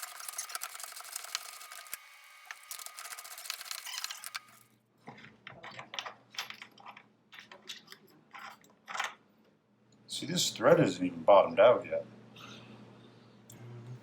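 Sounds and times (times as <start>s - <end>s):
small handling clicks and knocks: 5.0s - 9.2s.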